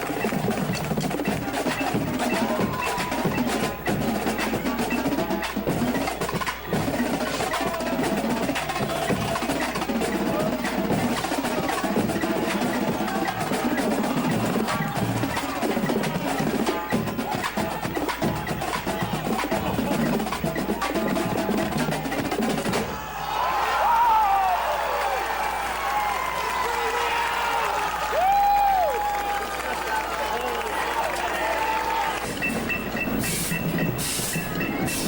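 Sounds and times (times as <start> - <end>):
rapid drum strokes and rolls: 0.0 - 23.0, 26.6 - 35.0
mallet keyboard notes: 32.2 - 35.0.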